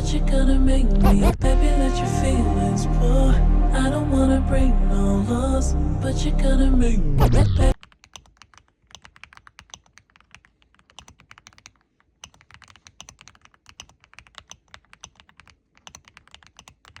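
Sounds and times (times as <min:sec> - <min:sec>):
mechanical keyboard typing: 0:07.8 - 0:17.0.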